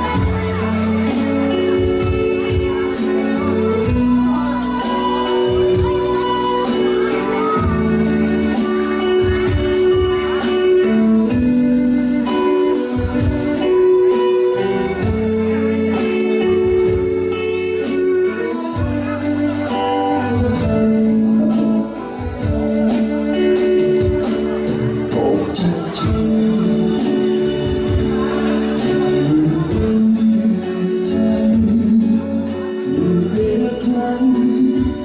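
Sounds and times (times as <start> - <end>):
guitar melody: 0.0 - 35.0
steady drum beat: 0.0 - 35.0.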